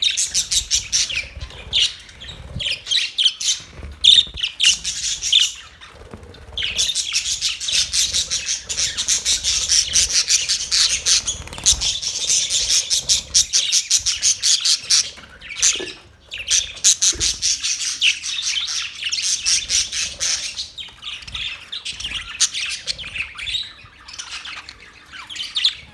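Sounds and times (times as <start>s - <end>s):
budgies chirping and chattering: 0.0s - 25.9s.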